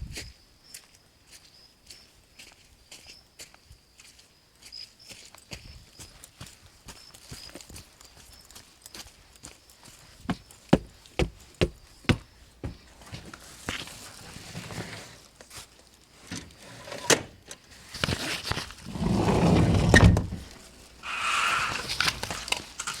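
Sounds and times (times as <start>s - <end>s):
sliding door rolling in track: 16.6s - 17.3s, 18.8s - 20.4s, 21.0s - 22.1s
short scraping: 18.2s - 23.0s.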